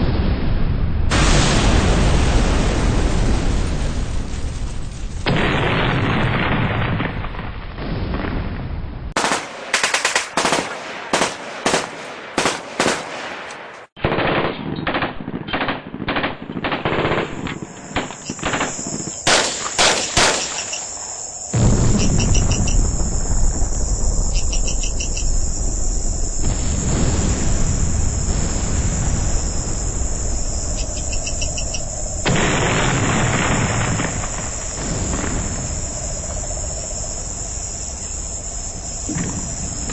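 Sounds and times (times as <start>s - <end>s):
gunshots: 9.2s - 23.7s, 30.8s - 35.6s
crickets chirping: 16.9s - 39.9s.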